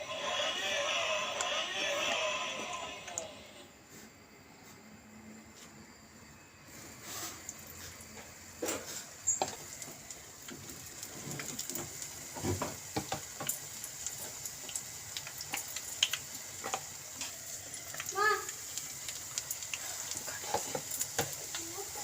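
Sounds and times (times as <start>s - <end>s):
deep-frying sizzle: 6.6s - 22.0s
oil popping: 7.3s - 21.8s.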